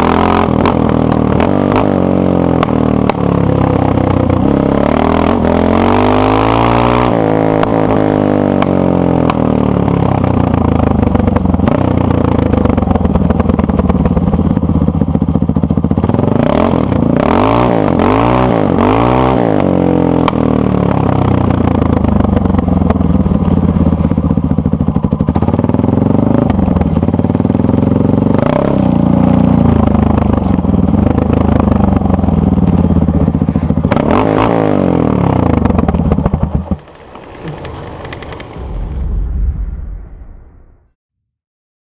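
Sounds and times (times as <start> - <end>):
motorcycle engine idling: 8.7 - 17.1, 20.3 - 37.1.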